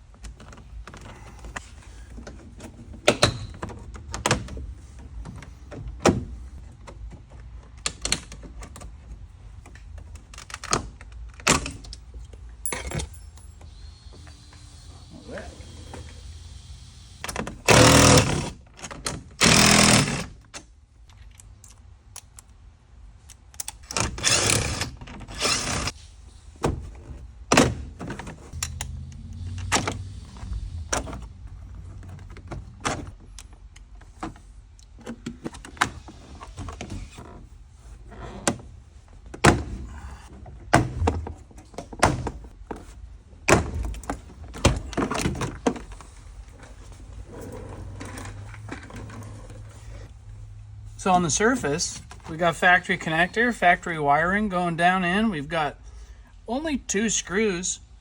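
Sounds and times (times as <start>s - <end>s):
loud rasping bursts: 17.7s - 18.5s, 19.4s - 20.3s.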